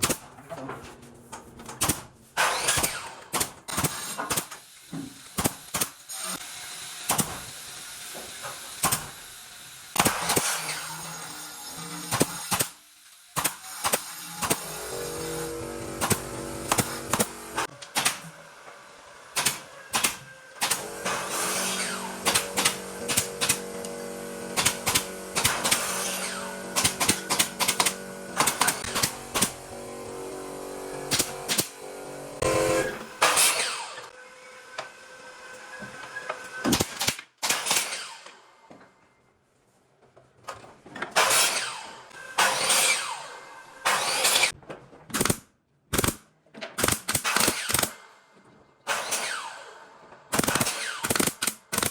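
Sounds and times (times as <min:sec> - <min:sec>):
pneumatic nail gun firing: 0:01.8 - 0:11.1, 0:11.8 - 0:34.1, 0:36.6 - 0:38.4, 0:41.1 - 0:48.2, 0:48.8 - 0:51.9
mechanical hum: 0:14.7 - 0:33.2.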